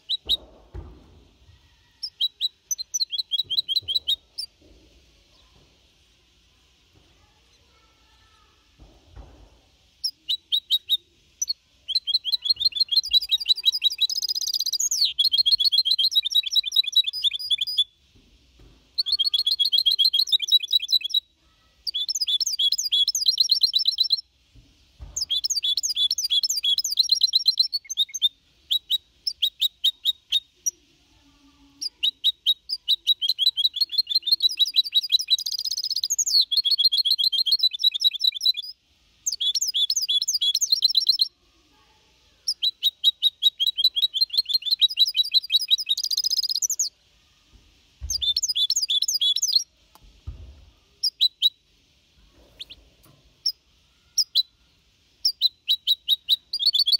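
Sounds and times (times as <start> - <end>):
finch singing twittering song: 0.0 - 0.5, 2.0 - 4.6, 10.0 - 17.9, 19.0 - 24.3, 25.0 - 30.8, 31.8 - 41.3, 42.5 - 46.9, 48.0 - 49.7, 55.2 - 56.9.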